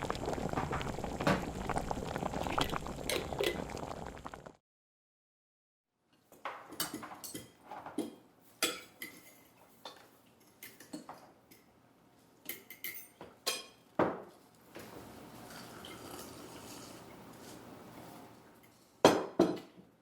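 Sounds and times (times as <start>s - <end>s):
dishes and cutlery clinking: 6.4s - 11.7s, 12.4s - 13.8s.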